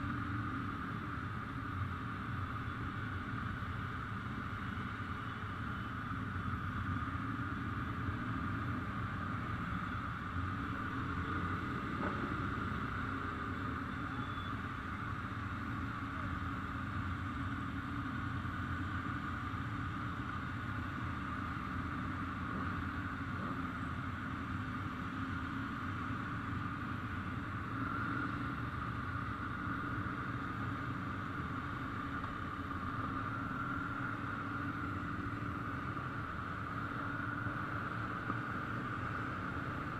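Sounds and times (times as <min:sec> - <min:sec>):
motorcycle engines droning: 0:00.0 - 0:39.9.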